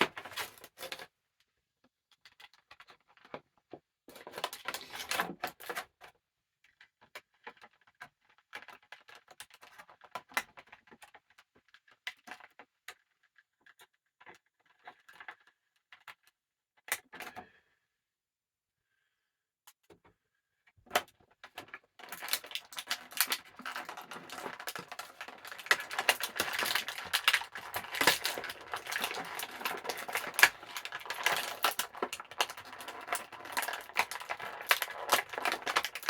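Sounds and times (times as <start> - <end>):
packaging crinkling and rustling: 21.5 - 36.0
sharp plastic crackle: 21.5 - 36.0.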